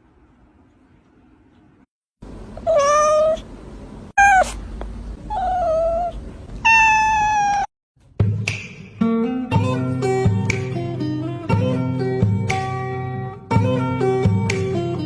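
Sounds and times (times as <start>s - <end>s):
cat meowing: 2.6s - 3.4s, 4.2s - 4.6s, 5.3s - 7.7s.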